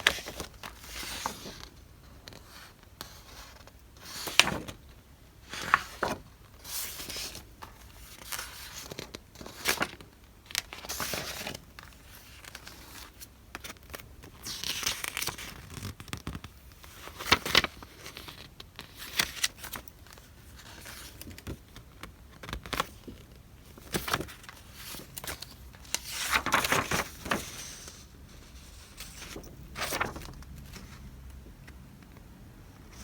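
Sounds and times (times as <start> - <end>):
paper packaging rustling: 14.5 - 31.2.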